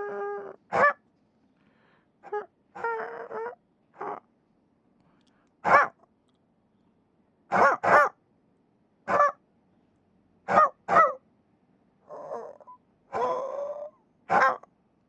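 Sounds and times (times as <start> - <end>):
puppies yelping: 12.1 - 14.6.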